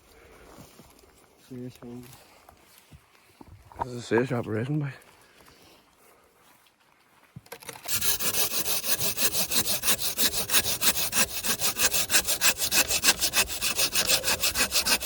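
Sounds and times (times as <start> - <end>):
hand saw cutting wood: 7.8 - 15.0.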